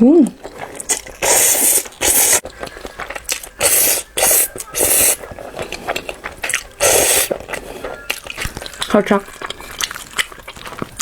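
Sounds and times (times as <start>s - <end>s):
noodles being slurped: 0.2s - 11.0s.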